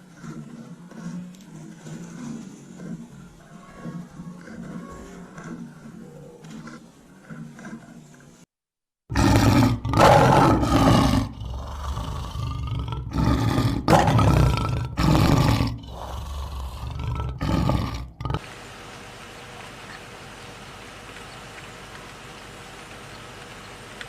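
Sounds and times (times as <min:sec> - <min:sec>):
big cat roaring and growling: 0:00.0 - 0:08.0, 0:09.1 - 0:18.4.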